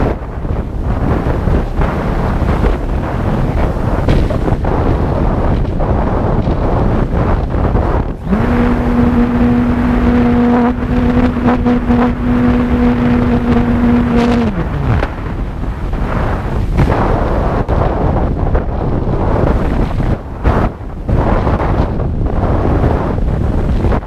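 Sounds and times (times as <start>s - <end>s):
wind buffeting microphone: 0.0s - 24.0s
steady hum rising in pitch: 8.0s - 15.1s.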